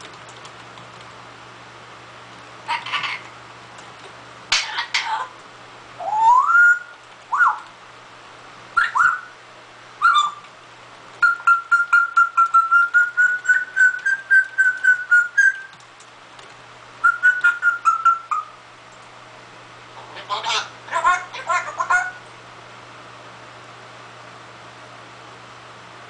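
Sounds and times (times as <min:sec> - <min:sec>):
parrot whistling: 0:06.0 - 0:07.6, 0:08.8 - 0:09.4, 0:10.0 - 0:10.4, 0:11.2 - 0:15.7, 0:17.0 - 0:18.6.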